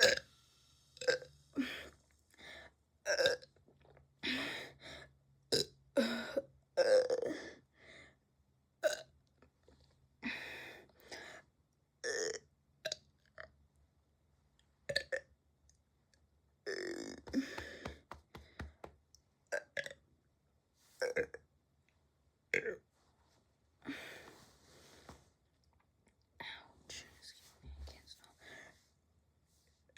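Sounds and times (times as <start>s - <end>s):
person burping: 0.0s - 0.2s, 12.0s - 12.4s.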